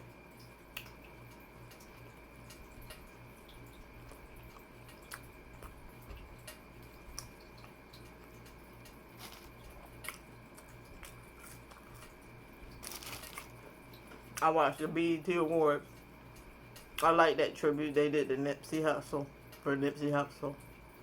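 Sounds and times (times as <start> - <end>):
low steady hum: 0.0 - 21.0
chewing mouth sounds: 4.0 - 14.4.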